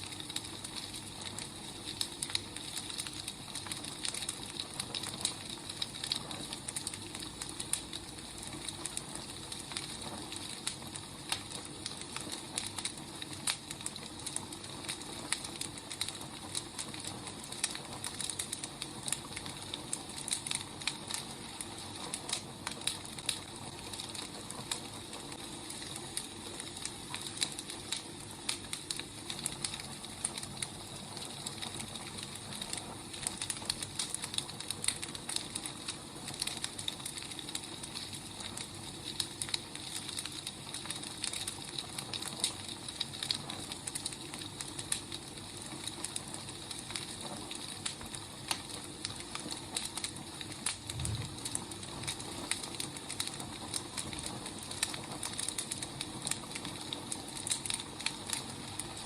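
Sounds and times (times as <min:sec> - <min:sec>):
fire hissing: 0:00.0 - 0:59.0
firewood crackling and popping: 0:00.0 - 0:59.0.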